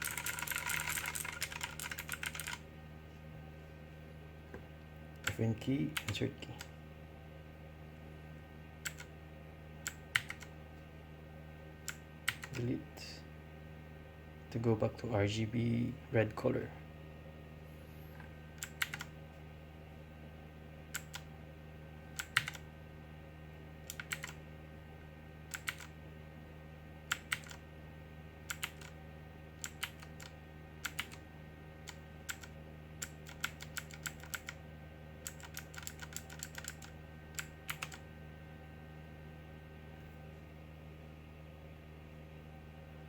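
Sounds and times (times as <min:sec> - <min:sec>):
mechanical keyboard keys clicking: 0:00.0 - 0:02.6, 0:08.9 - 0:09.1, 0:09.9 - 0:10.5, 0:11.9 - 0:12.7, 0:18.6 - 0:19.1, 0:21.0 - 0:21.2, 0:22.2 - 0:22.6, 0:23.9 - 0:24.4, 0:25.5 - 0:25.9, 0:27.1 - 0:27.6, 0:28.5 - 0:28.9, 0:29.6 - 0:31.2, 0:31.9 - 0:34.6, 0:35.3 - 0:38.0
low electrical hum: 0:00.0 - 0:43.0.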